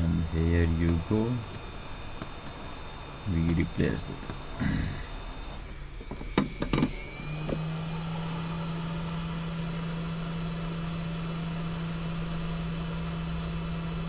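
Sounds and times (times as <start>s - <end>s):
heat gun blowing air: 6.9s - 14.0s.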